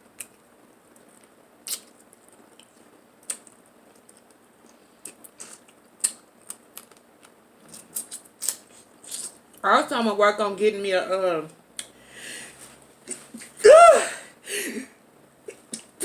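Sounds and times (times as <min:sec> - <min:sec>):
eating clicks and smacks: 0:00.2 - 0:09.4.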